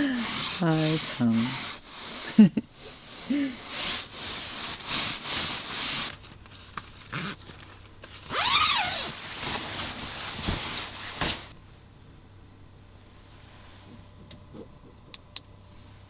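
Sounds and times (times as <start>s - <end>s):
cloth rustling: 0.0s - 11.6s.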